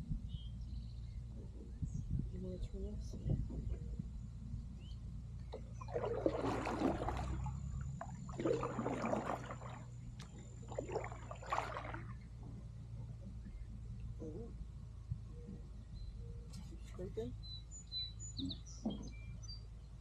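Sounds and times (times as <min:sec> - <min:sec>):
paddle splashing in water: 0:05.5 - 0:12.3.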